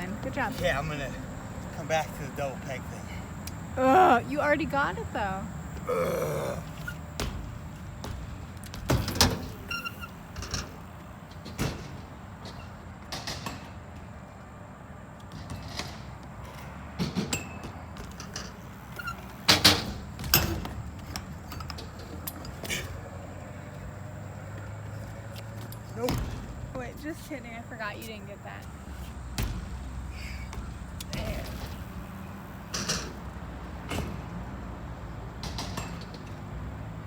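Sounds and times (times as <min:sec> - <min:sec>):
bike tyres rolling rumble: 0:00.0 - 0:37.0
bike landing knocks and clacks: 0:06.8 - 0:14.4, 0:15.2 - 0:27.0, 0:28.7 - 0:34.5, 0:35.3 - 0:36.7.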